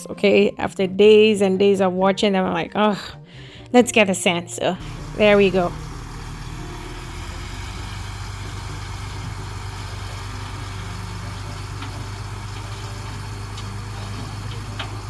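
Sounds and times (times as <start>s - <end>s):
truck engine idling: 4.8s - 15.0s.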